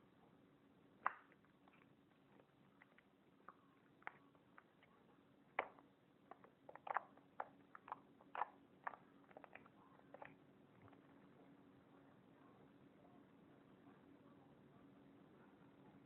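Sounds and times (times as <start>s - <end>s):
slime squishing with wet clicks: 1.0s - 11.1s.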